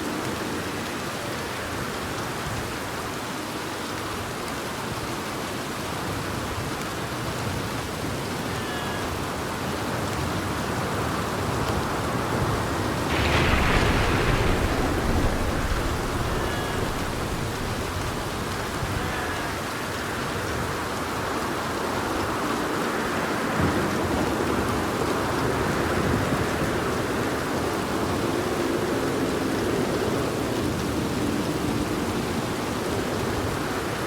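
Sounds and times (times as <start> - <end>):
steady rain: 0.0 - 34.0
thunder rolling: 12.3 - 19.4.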